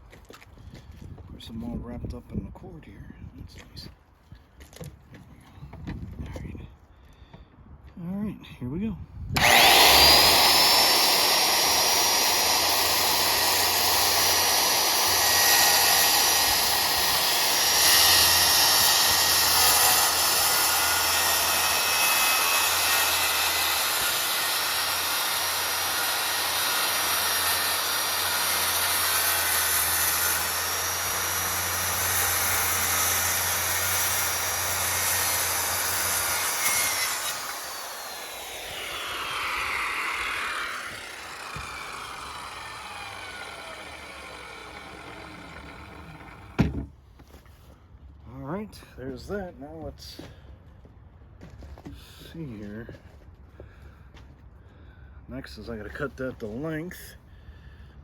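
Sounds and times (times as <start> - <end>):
circular saw cutting plywood: 9.4 - 46.9.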